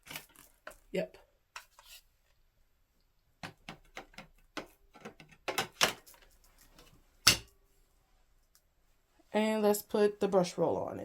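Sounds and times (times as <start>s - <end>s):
plastic parts clicking and knocking: 3.4s - 6.3s.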